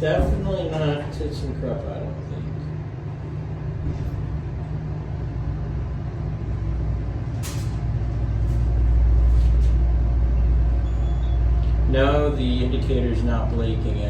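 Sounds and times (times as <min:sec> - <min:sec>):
elevator machinery humming: 0:00.0 - 0:14.0.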